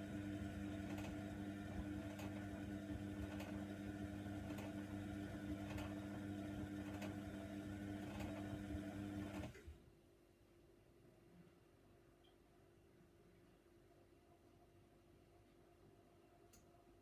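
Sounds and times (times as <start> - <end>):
washer dryer humming: 0.0 - 9.7.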